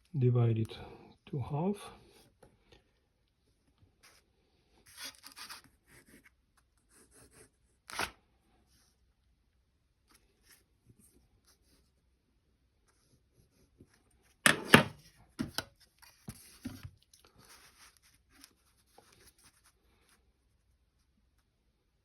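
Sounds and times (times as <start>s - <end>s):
pencil scratching on paper: 4.8s - 7.6s
sharp knocks of drawing tools: 14.5s - 15.5s.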